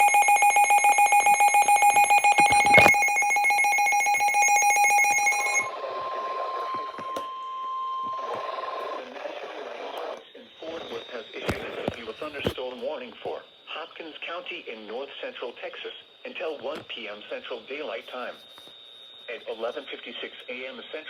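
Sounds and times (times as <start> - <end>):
rapidly pulsing electronic beep: 0.0 - 16.4
steady warning tone: 0.0 - 21.0
radio static hiss: 8.1 - 21.0.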